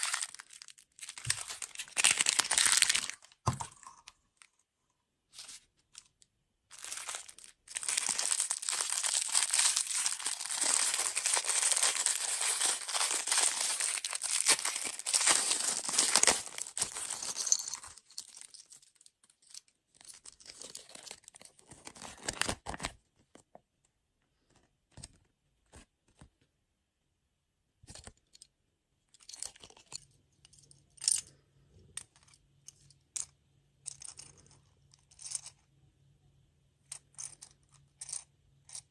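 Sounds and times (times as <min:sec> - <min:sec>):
plastic packaging tearing and crinkling: 0:00.0 - 0:03.4, 0:06.7 - 0:18.8, 0:20.5 - 0:22.9.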